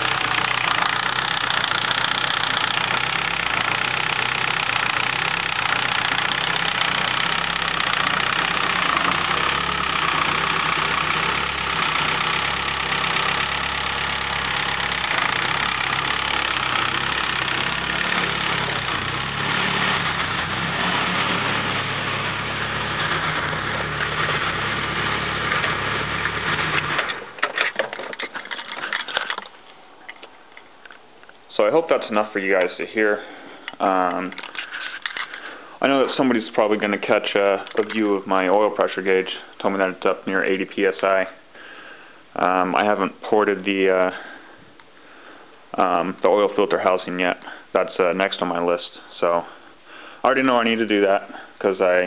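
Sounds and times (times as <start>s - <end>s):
car engine idling with ticking: 0.0s - 27.0s.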